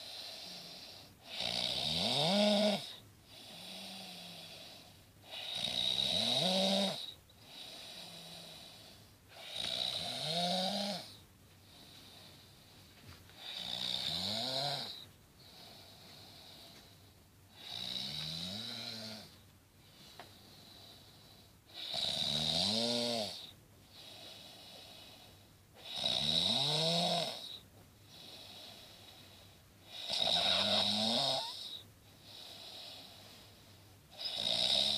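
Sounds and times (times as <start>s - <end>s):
quiet breathing: 0.0s - 1.4s, 2.8s - 5.7s, 7.0s - 9.8s, 11.0s - 14.1s, 14.8s - 21.8s, 23.3s - 25.9s, 27.3s - 34.4s
person snoring: 0.0s - 11.2s, 13.4s - 15.0s, 25.8s - 27.6s, 29.9s - 31.8s.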